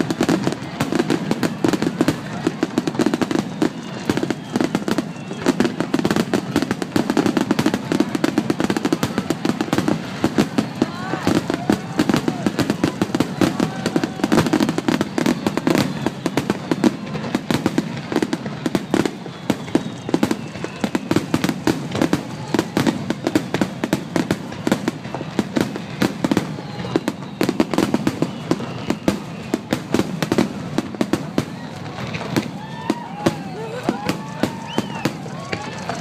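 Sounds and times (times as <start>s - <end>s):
fireworks bursting and crackling: 0.0s - 36.0s.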